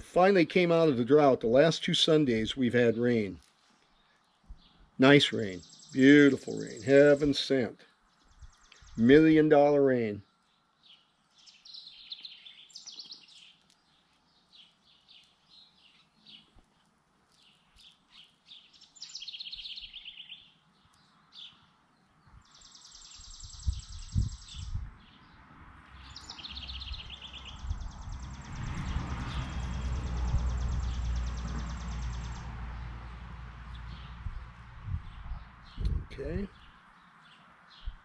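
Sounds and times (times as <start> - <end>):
songbirds singing: 0.0 - 38.0
high buzzing bird trill: 22.5 - 24.8, 26.0 - 32.5.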